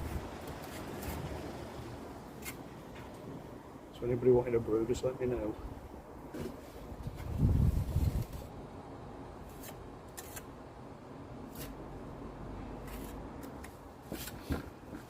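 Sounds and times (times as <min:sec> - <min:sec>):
hand tool scrapes and clicks: 0:09.6 - 0:10.5.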